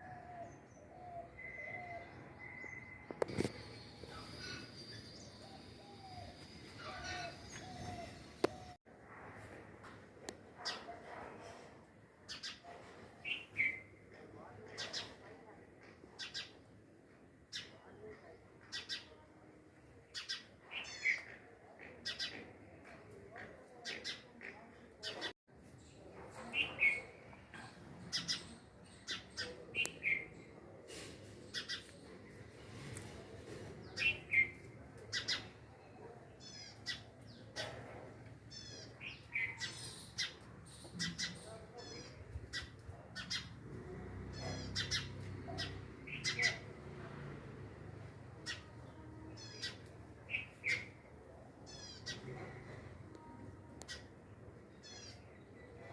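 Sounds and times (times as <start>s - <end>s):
birds chirping and squawking: 0.2s - 8.8s, 36.4s - 37.8s, 38.4s - 43.6s, 44.3s - 46.7s, 51.7s - 52.9s.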